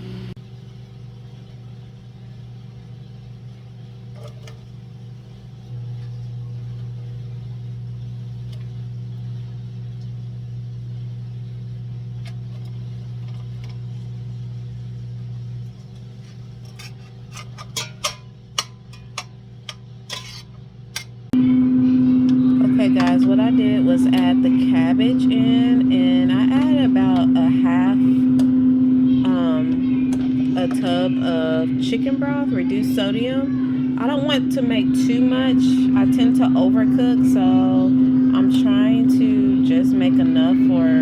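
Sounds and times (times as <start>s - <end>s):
kitchen appliance humming: 0.0s - 41.0s
clicks and knocks of cookware: 16.6s - 21.2s.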